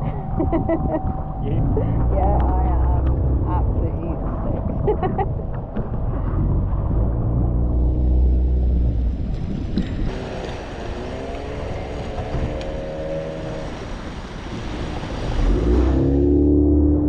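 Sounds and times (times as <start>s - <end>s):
boat engine running: 0.0s - 17.0s
wind: 0.0s - 17.0s
waves on choppy sea: 7.9s - 17.0s.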